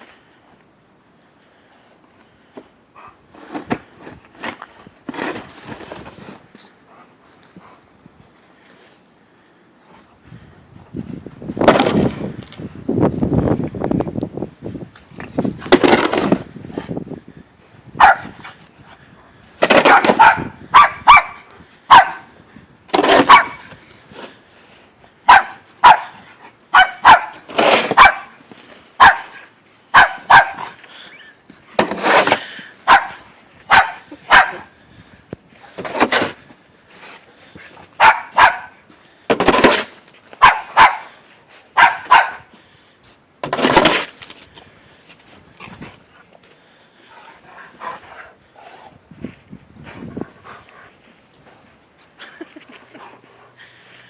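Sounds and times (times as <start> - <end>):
dog barking: 18.0 - 18.4, 19.9 - 22.3, 23.2 - 23.7, 25.3 - 27.4, 28.0 - 28.4, 29.0 - 30.8, 32.9 - 34.7, 38.0 - 38.8, 40.4 - 41.1, 41.8 - 42.5.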